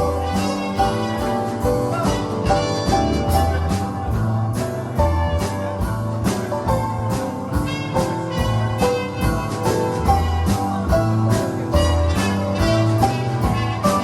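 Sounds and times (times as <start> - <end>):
bass guitar notes: 0.0 - 14.0
drums: 0.0 - 14.0
guitar: 0.0 - 14.0.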